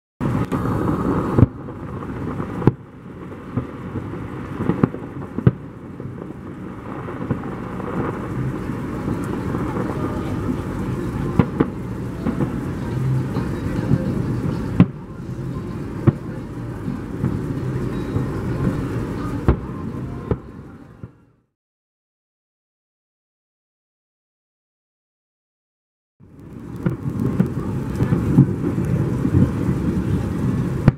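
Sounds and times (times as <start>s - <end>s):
rumble of echoing booms: 0.2s - 21.2s, 26.4s - 30.9s
fireworks bursting with sharp bangs: 0.2s - 21.5s, 26.2s - 30.9s.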